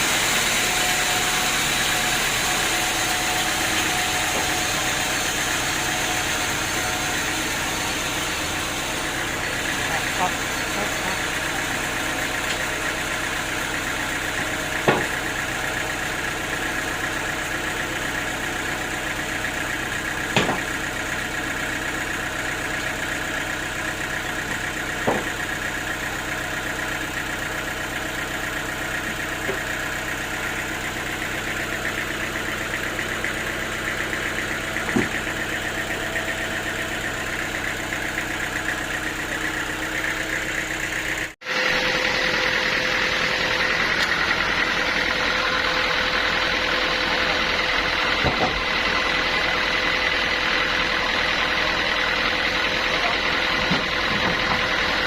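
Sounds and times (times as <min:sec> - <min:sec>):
sawmill engine running: 0:00.0 - 0:55.0
sharp knocks: 0:14.8 - 0:15.1, 0:20.3 - 0:20.7, 0:25.0 - 0:25.4, 0:34.9 - 0:35.2.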